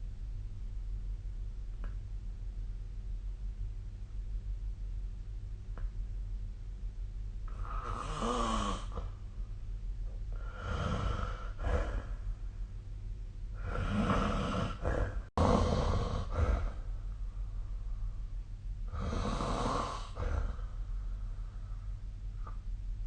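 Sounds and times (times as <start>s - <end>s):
steady low hum: 0.0s - 23.0s
person snoring: 7.5s - 9.1s, 10.3s - 12.3s, 13.5s - 16.9s, 18.9s - 20.8s.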